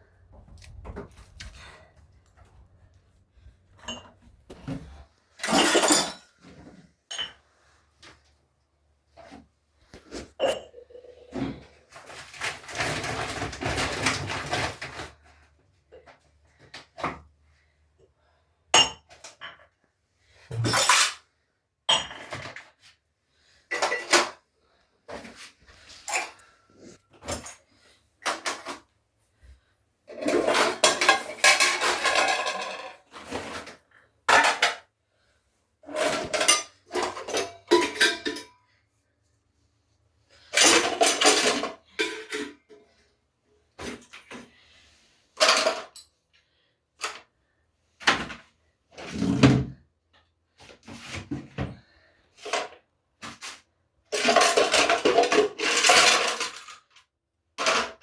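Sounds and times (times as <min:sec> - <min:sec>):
pots and dishes clattering: 0:05.4 - 0:06.4, 0:21.9 - 0:22.6, 0:23.7 - 0:24.4, 0:30.1 - 0:33.7, 0:34.3 - 0:34.8, 0:35.9 - 0:38.6, 0:40.6 - 0:42.9, 0:54.1 - 0:56.8.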